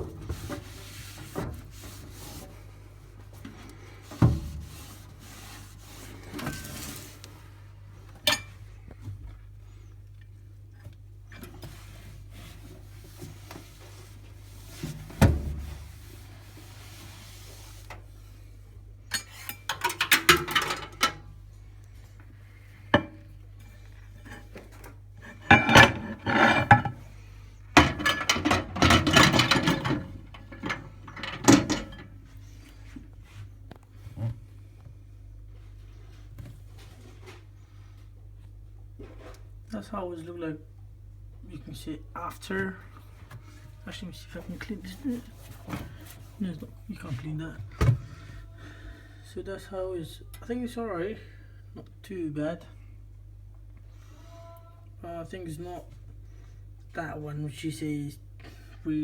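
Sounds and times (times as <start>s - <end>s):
wiping inside a microwave: 0.0s - 7.6s, 11.5s - 18.5s, 43.4s - 48.5s
low steady hum: 0.0s - 59.0s.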